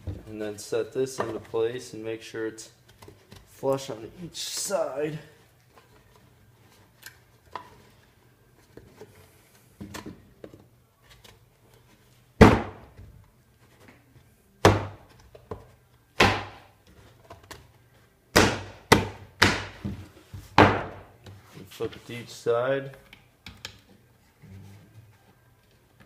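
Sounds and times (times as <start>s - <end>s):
sharp wooden knocks: 18.4s - 20.0s, 20.6s - 21.0s.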